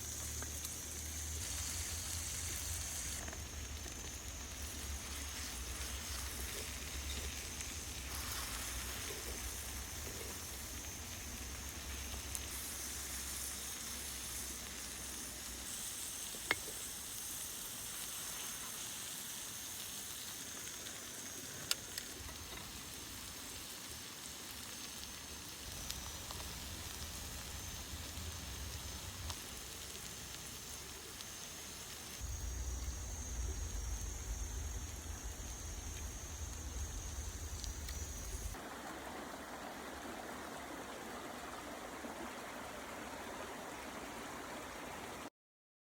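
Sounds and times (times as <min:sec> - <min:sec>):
steak sizzling on hot stone: 0:00.0 - 0:38.6
low rumble: 0:32.2 - 0:38.6.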